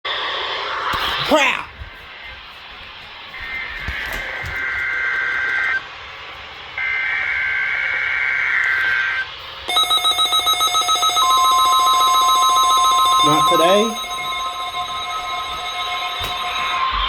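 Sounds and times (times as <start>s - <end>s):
steady weather alarm tone: 6.8s - 17.0s
pulsing alert beep: 9.7s - 17.0s.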